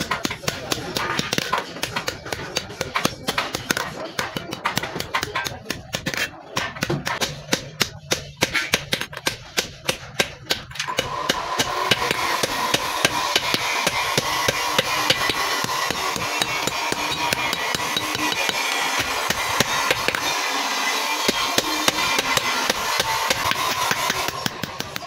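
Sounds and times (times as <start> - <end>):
hammer striking metal: 0.0 - 25.0.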